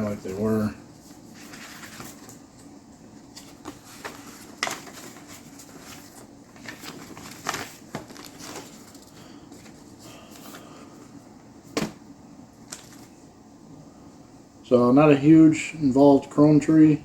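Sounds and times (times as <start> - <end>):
paper and plastic shuffling: 0.0 - 2.7, 3.3 - 10.7, 12.7 - 13.2.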